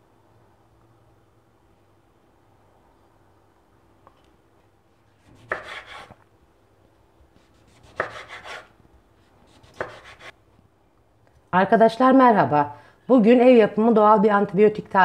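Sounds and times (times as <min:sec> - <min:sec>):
knife cutting on cutting board: 0:05.1 - 0:06.2, 0:07.4 - 0:10.3.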